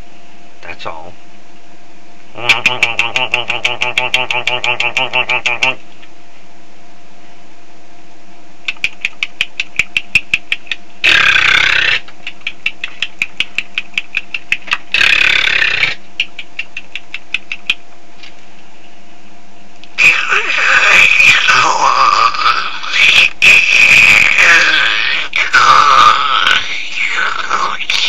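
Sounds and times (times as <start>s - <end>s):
harsh noisy mouth blast: 2.3s - 5.8s, 8.6s - 17.8s, 19.9s - 28.0s
rapid mouth clicks: 2.4s - 6.0s, 8.6s - 17.9s, 22.4s - 25.0s.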